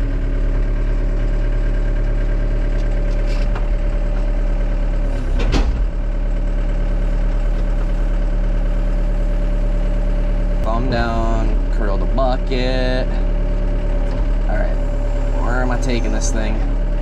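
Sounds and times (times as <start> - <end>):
diesel excavator engine idling: 0.0 - 17.0.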